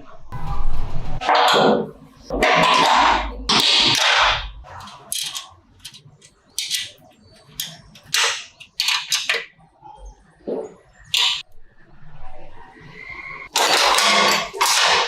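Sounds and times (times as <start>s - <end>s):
tools clicking and knocking: 2.3s - 9.6s, 11.0s - 11.5s, 13.6s - 15.0s.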